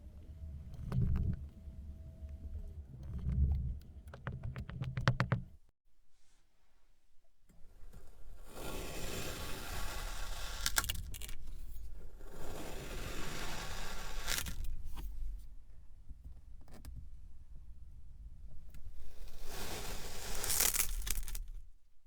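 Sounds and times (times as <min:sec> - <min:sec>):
sand scraping and crumbling: 0:08.0 - 0:14.8, 0:19.0 - 0:21.6.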